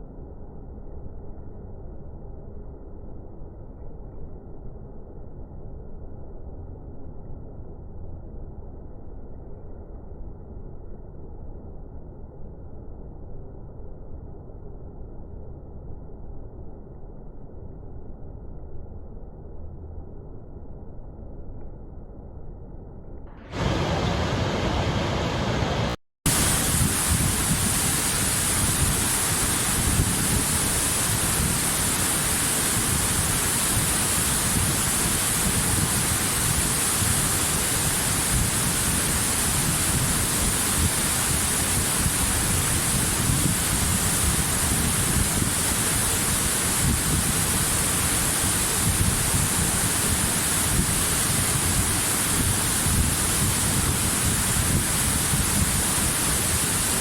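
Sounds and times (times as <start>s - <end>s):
waterfall rushing: 23.4s - 57.0s.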